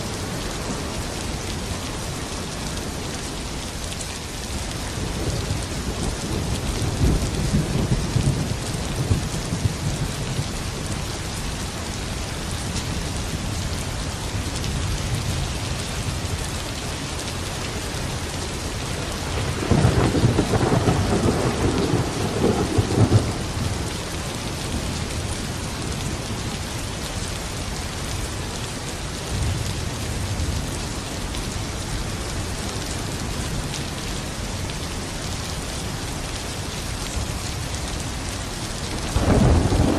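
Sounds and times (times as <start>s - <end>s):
heavy rain: 0.0s - 39.9s
thunder rumbling: 18.8s - 23.9s, 39.1s - 39.9s.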